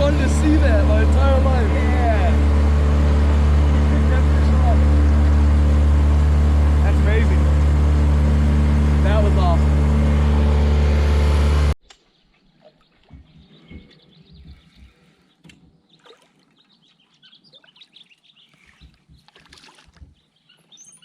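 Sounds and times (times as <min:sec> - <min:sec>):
boat motor running: 0:00.0 - 0:11.8
faint bird chirps: 0:12.0 - 0:19.3, 0:20.1 - 0:21.0.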